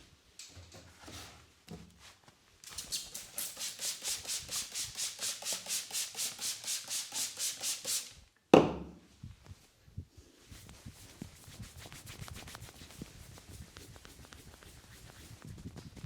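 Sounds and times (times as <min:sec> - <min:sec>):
rubbing strokes on head: 0:02.7 - 0:08.1, 0:10.5 - 0:16.0.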